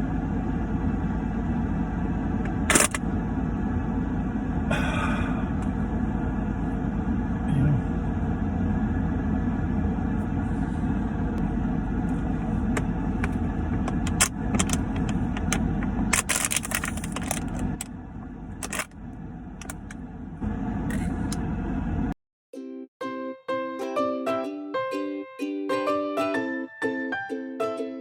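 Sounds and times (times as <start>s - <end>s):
steady low rumble: 0.0s - 22.2s.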